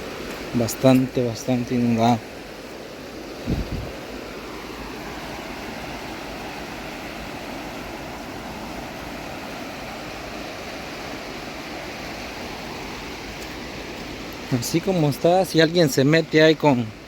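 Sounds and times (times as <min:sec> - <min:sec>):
river current rushing: 0:00.0 - 0:17.0.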